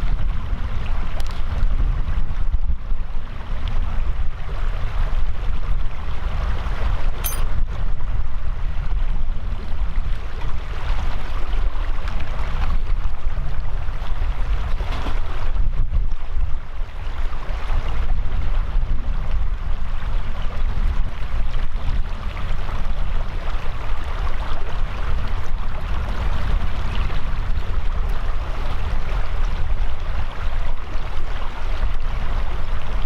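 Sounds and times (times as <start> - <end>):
wind buffeting microphone: 0.0 - 33.0
sharp click: 7.2 - 7.5.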